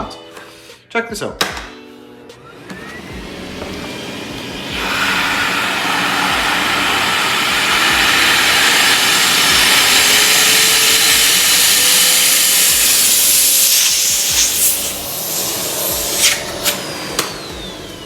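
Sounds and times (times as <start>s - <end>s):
vacuum cleaner motor running: 2.4s - 18.0s.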